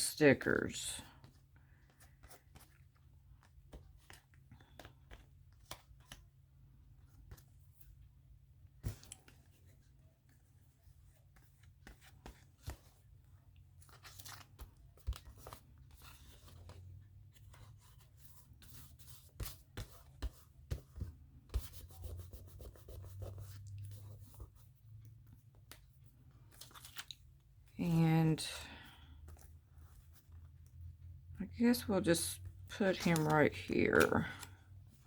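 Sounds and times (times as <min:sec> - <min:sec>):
paper crinkling and rubbing: 0:32.8 - 0:35.0.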